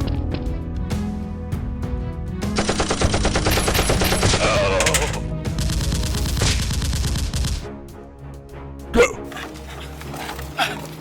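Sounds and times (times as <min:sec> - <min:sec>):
background music: 0:00.0 - 0:11.0
rapid automatic gunfire: 0:02.6 - 0:04.6.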